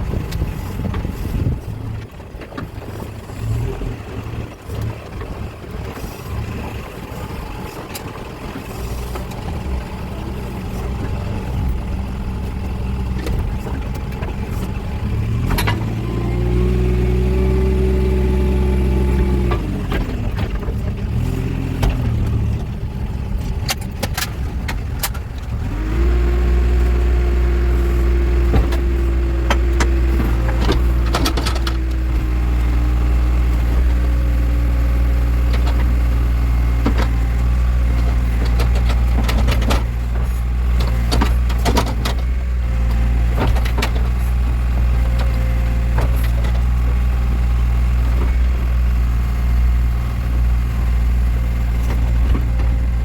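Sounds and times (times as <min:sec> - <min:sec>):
diesel engine running: 0:00.0 - 0:53.0
engine whine: 0:00.0 - 0:53.0.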